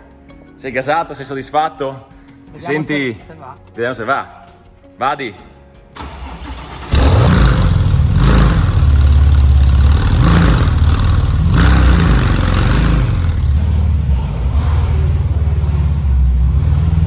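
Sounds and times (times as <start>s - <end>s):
car engine starting and revving: 6.0s - 17.0s.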